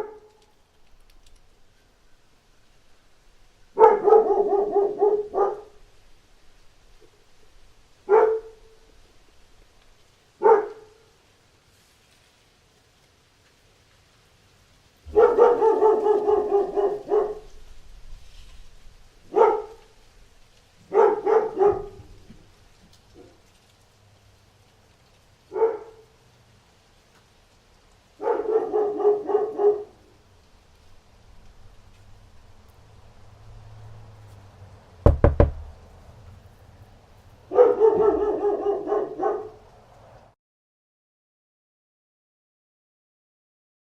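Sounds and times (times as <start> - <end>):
dog barking: 0.0 - 0.4, 3.7 - 5.9, 8.0 - 8.9, 10.4 - 11.1, 15.1 - 17.6, 19.2 - 20.0, 20.8 - 22.3, 23.1 - 23.4, 25.5 - 26.2, 28.2 - 30.1, 37.5 - 39.6
sharp knocks: 35.1 - 35.8.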